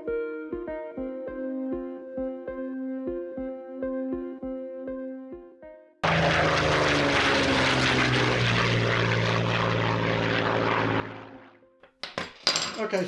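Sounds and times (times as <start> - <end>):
propeller engine roaring: 6.0 - 11.6.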